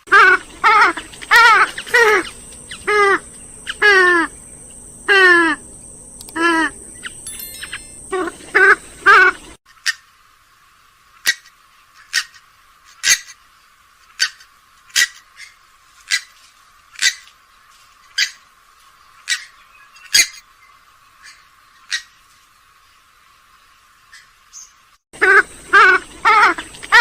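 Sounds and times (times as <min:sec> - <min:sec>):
swamphen calling: 0:00.0 - 0:10.0, 0:19.1 - 0:22.2, 0:24.1 - 0:27.0.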